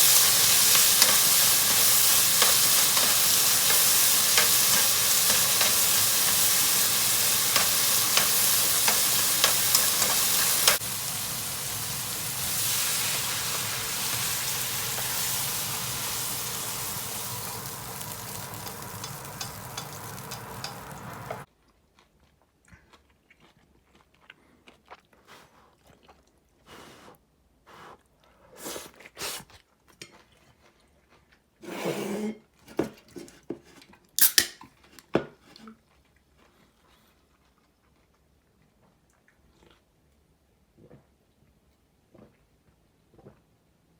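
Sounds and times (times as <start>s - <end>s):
utensil clicking against pan: 0.0s - 11.2s, 12.6s - 21.4s
food sizzling in a pan: 0.0s - 21.5s.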